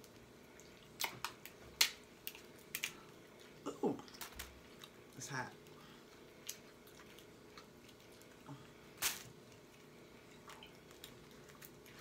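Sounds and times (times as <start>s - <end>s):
mouth chewing with wet smacks: 0.6s - 8.8s.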